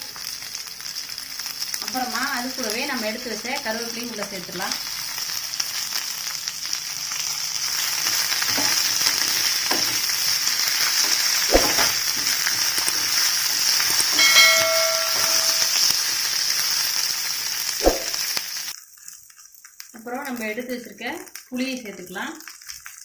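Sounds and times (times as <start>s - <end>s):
oil sizzling in a pan: 0.0s - 23.0s
brief ringing tone: 14.2s - 15.9s.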